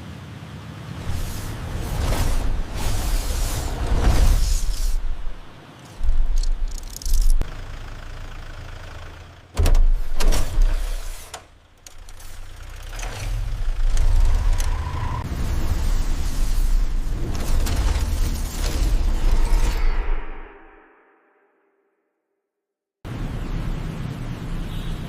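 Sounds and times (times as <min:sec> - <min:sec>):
deep vehicle-like rumble: 0:00.1 - 0:20.2.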